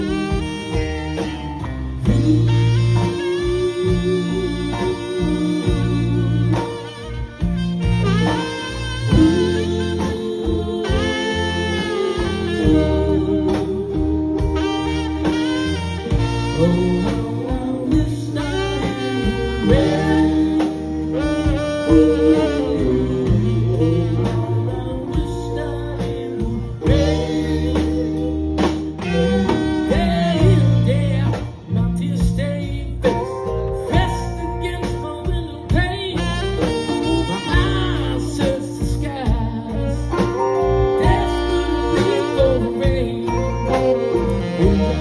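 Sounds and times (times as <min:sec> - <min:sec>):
live band playing soul ballad: 0:00.0 - 0:45.0.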